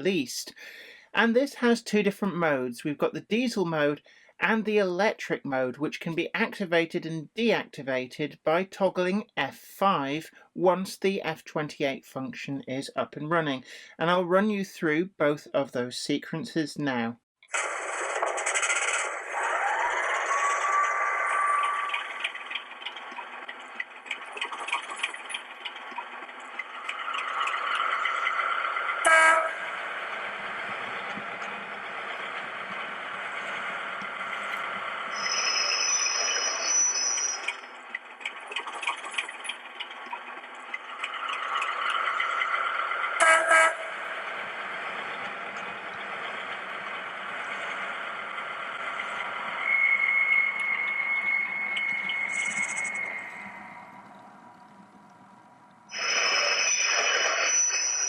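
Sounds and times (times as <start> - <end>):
locomotive running with rising whine: 17.5 - 58.0
short horn blasts: 29.0 - 29.7, 43.2 - 43.9
high whistle: 35.1 - 37.7, 49.6 - 53.8, 55.9 - 58.0.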